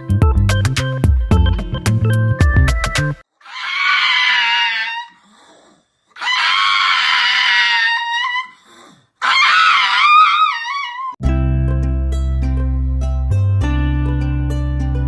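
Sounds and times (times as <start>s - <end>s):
high-pitched screams: 3.4s - 5.2s, 6.2s - 8.6s, 9.2s - 11.2s.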